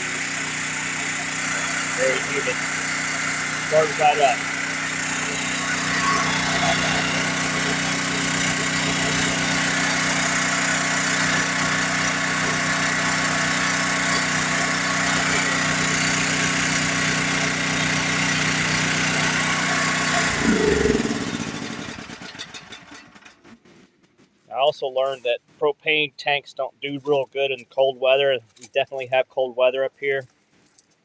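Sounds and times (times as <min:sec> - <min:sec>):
generator engine running: 0:00.0 - 0:23.6.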